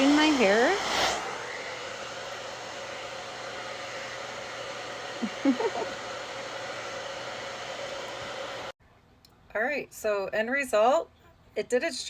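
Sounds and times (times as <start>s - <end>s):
blow dryer running: 0.0s - 8.8s.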